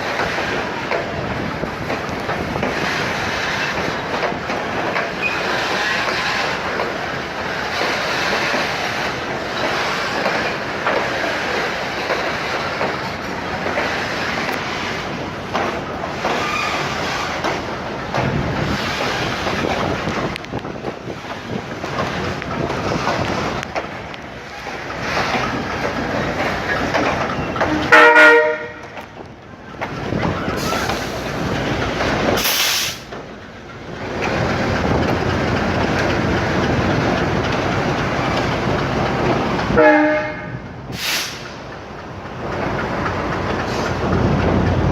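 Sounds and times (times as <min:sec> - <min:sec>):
train rumbling on rails: 0:00.0 - 0:44.9
train horn blast: 0:27.7 - 0:29.0, 0:39.8 - 0:40.6.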